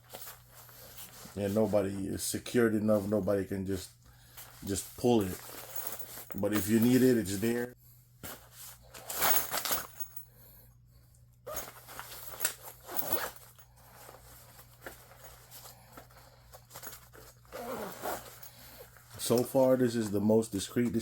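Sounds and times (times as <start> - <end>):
fabric bag rustling: 4.3 - 7.5, 8.2 - 10.2, 11.5 - 19.5.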